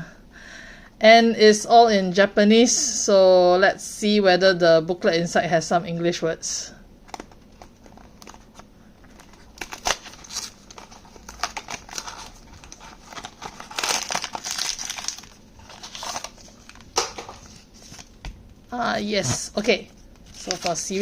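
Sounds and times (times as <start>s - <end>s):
packaging crinkling and rustling: 7.0s - 18.4s, 19.3s - 21.0s.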